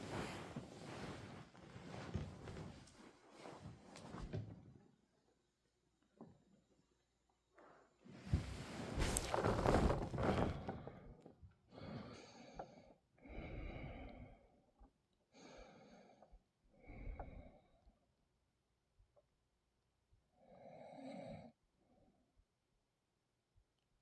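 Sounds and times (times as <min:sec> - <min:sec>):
person breathing heavily while asleep: 0:11.7 - 0:14.6, 0:15.3 - 0:17.7.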